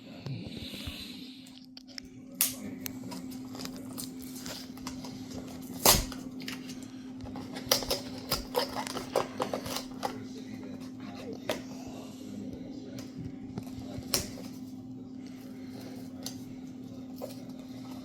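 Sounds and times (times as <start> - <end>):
steady low hum: 0.0 - 18.0
packaging crinkling and clicking: 1.8 - 10.2.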